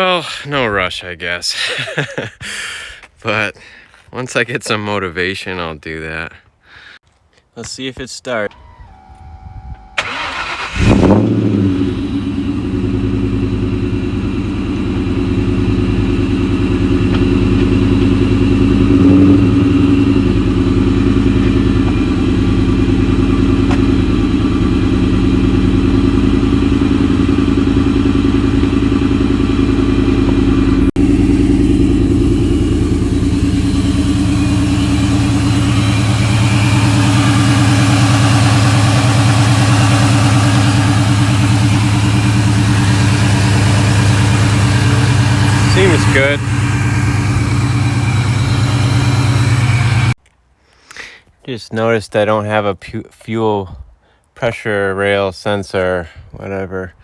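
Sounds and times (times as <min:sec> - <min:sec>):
car engine cranking and idling: 0:08.3 - 0:50.2.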